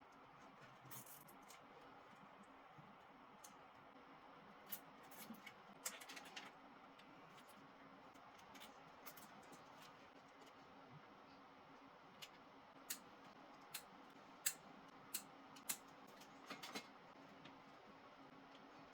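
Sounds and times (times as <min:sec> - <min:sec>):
faint sharp clicks and scrapes: 0:00.1 - 0:03.6, 0:04.7 - 0:11.1.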